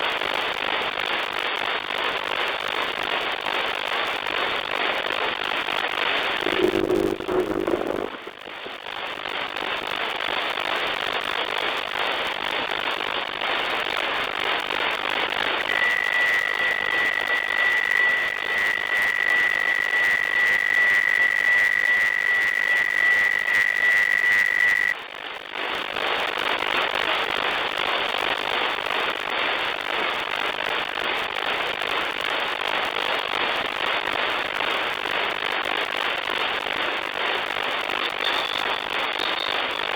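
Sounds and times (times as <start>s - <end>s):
radio static hiss: 6.2s - 8.5s, 14.7s - 25.0s, 35.3s - 39.9s
high carrier whistle: 15.7s - 25.0s, 38.1s - 39.9s.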